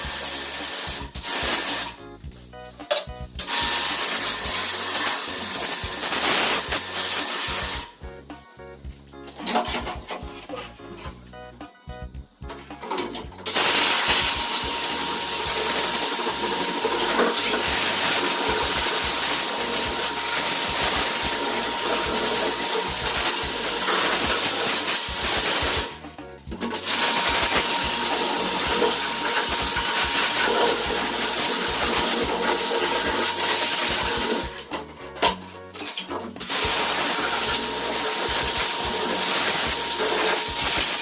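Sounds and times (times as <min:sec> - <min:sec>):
hissing water spray: 0:00.0 - 0:02.0, 0:03.4 - 0:07.9, 0:13.5 - 0:26.0, 0:26.8 - 0:34.6, 0:36.4 - 0:41.0.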